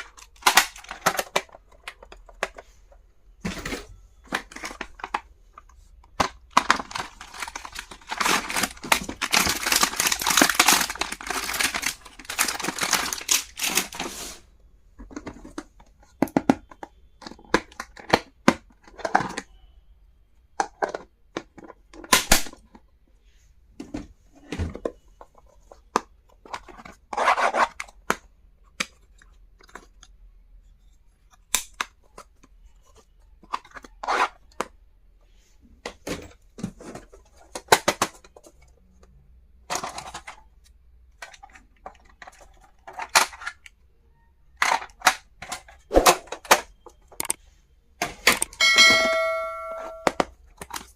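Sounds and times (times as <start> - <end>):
packaging rustling and tearing: 6.2 - 14.4.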